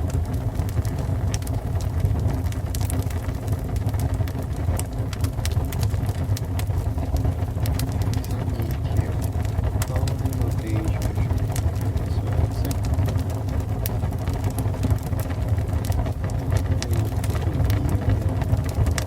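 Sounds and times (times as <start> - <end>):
fire crackling and popping: 0.0 - 19.0
fire roaring: 0.0 - 19.0.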